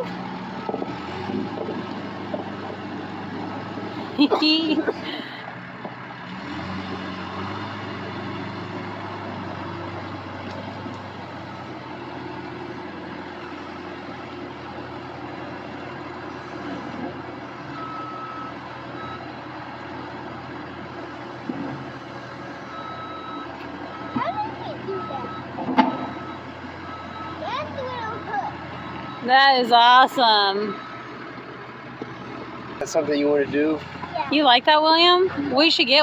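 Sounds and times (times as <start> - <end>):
excavator diesel engine running: 0.0 - 36.0
warning beeper beeps: 24.1 - 28.4, 29.1 - 31.1.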